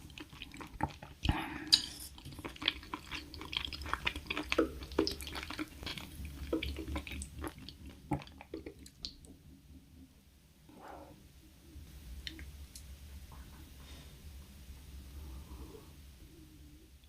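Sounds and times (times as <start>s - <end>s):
wet chewing and mouth smacks: 0.0s - 9.2s.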